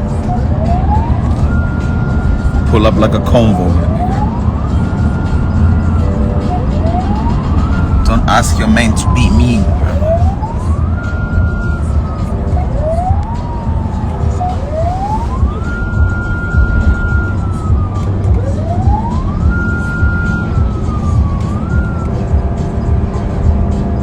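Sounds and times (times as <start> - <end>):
wailing siren: 0.0 - 24.0
low rumble: 3.8 - 19.6.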